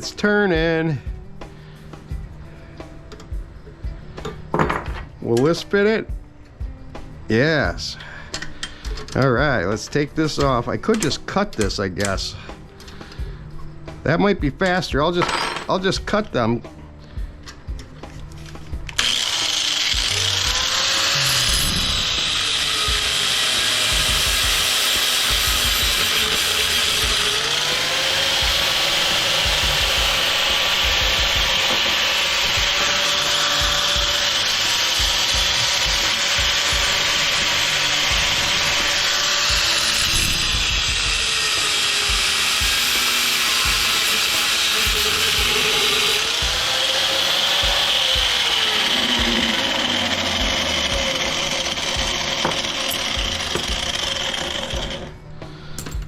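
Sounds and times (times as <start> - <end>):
power saw cutting bolts: 18.8 - 55.2.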